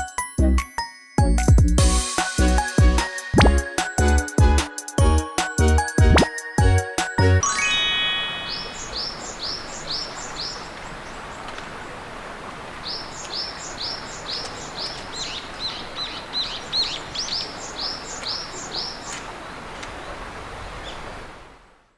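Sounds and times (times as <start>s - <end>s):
songbird chirping: 7.2s - 12.0s, 12.8s - 21.2s
outdoor ambience hiss: 7.4s - 21.9s.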